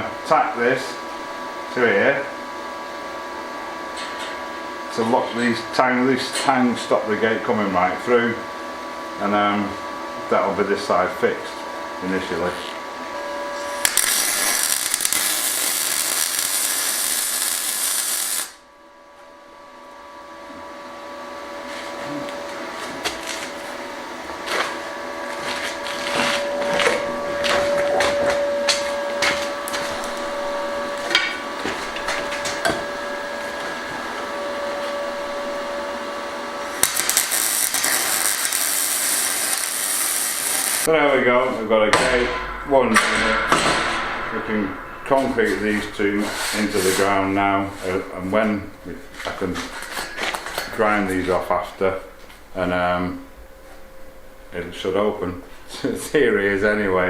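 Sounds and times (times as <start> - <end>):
steady hum: 0.0 - 57.0
electric arc welder crackling: 13.6 - 18.7, 23.0 - 40.9.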